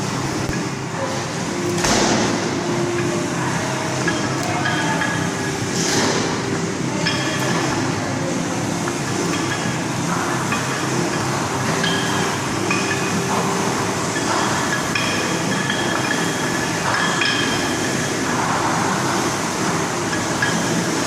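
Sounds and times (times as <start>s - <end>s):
kettlebells clinking: 3.7s - 5.6s, 7.0s - 7.7s, 9.1s - 18.0s, 20.0s - 21.0s.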